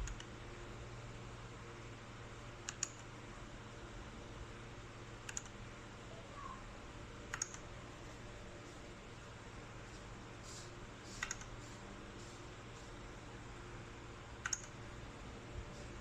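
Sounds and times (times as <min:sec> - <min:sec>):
faint low hum: 0:00.0 - 0:16.0
keyboard keys clicking: 0:14.4 - 0:14.8.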